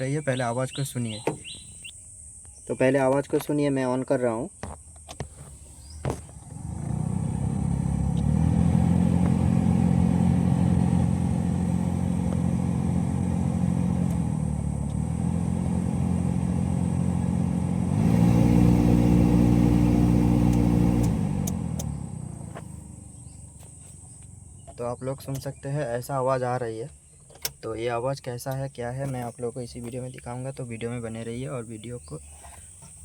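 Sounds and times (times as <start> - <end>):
car blower motor humming: 0.2 - 1.9, 5.1 - 25.6.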